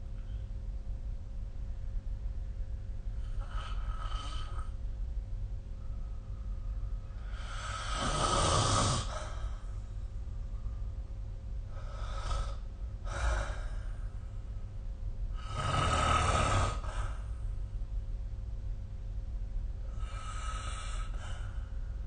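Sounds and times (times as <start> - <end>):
steady low hum: 0.0 - 22.0
faint breaths: 3.1 - 4.8, 5.7 - 11.1, 11.7 - 17.6, 19.8 - 22.0
person snoring: 7.2 - 9.5, 15.4 - 17.3.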